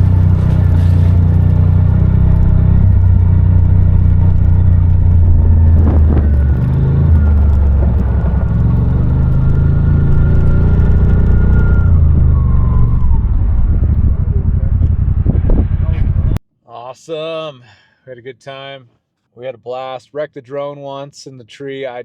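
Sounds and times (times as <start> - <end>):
utility vehicle engine rumbling: 0.0 - 16.4.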